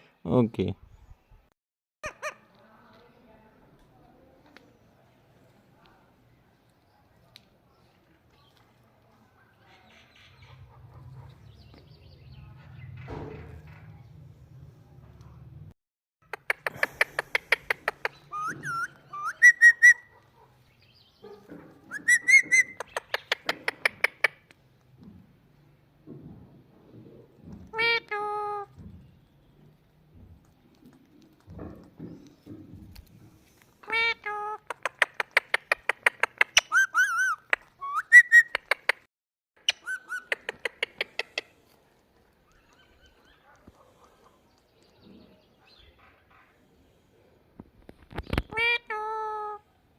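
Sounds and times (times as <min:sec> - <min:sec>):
parrot clicking: 0:16.3 - 0:18.2, 0:22.6 - 0:24.5, 0:34.6 - 0:36.8, 0:39.6 - 0:41.5
parrot whistling: 0:18.3 - 0:20.1, 0:21.9 - 0:22.8, 0:36.6 - 0:38.6, 0:39.7 - 0:40.4.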